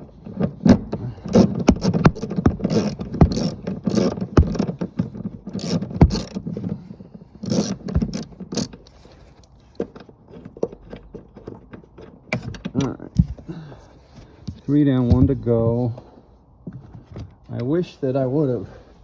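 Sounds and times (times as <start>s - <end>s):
socket wrench on metal bolt: 0.3s - 6.8s, 7.4s - 9.0s.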